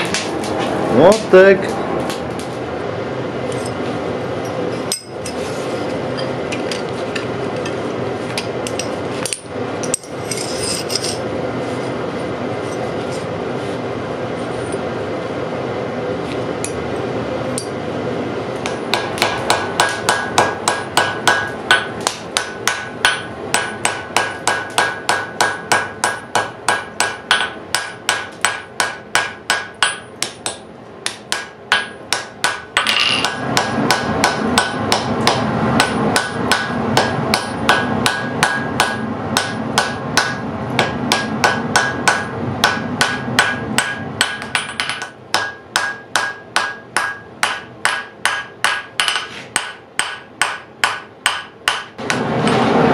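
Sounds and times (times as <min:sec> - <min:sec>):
hammer striking steel anvil: 0:04.8 - 0:05.4, 0:18.6 - 0:52.6.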